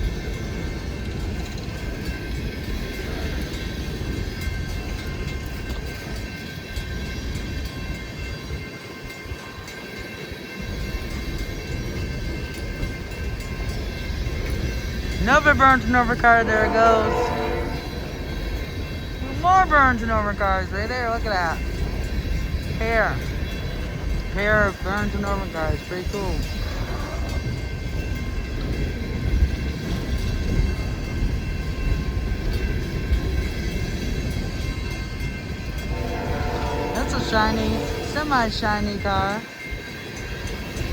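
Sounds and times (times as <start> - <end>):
freight train wheels rumbling: 0.0 - 40.9
hopper cars rolling on rails: 0.0 - 40.9.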